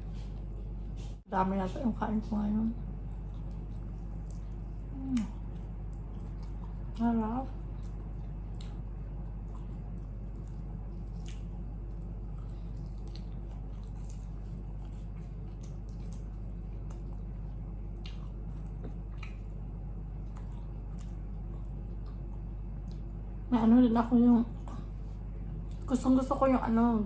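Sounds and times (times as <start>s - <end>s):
steady low hum: 0.0s - 27.0s
chewing with mouth clicks: 2.8s - 23.2s.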